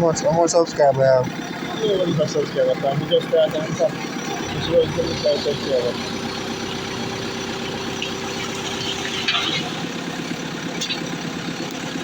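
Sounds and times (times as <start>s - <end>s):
backhoe engine running: 0.0s - 12.0s.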